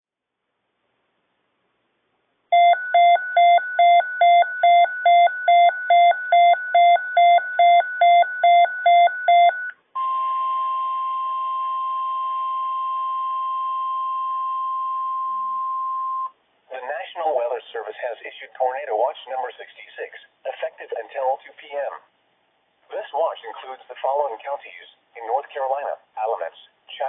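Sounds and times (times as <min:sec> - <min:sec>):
electronic alert beeps: 0:02.6 - 0:16.3
steady high alarm tone: 0:02.6 - 0:16.3.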